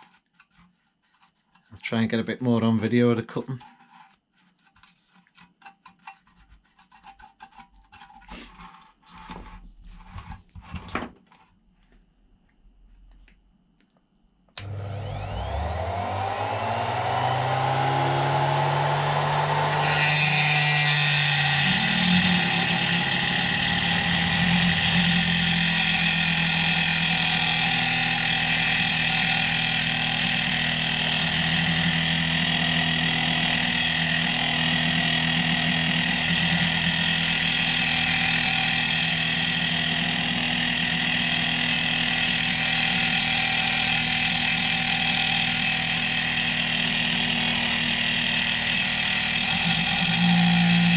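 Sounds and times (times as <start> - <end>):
disc grinding metal: 14.6 - 50.9
rotary tool motor whine: 14.6 - 50.9.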